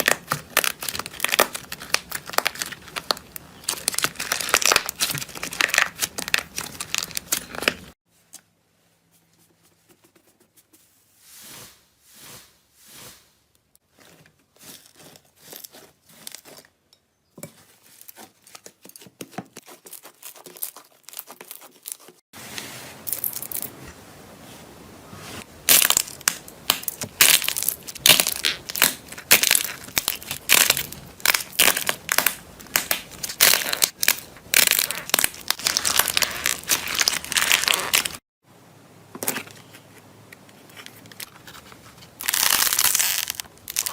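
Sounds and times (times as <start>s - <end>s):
slime crackling and squishing: 0.0s - 8.0s, 17.6s - 22.2s, 25.5s - 38.2s, 42.1s - 43.9s.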